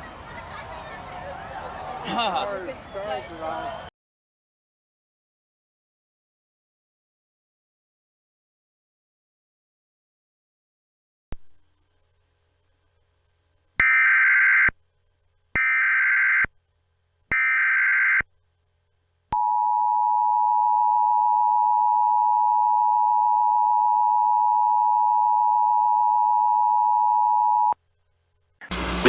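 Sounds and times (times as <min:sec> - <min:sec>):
steady dual attention tone: 0:11.4 - 0:29.0.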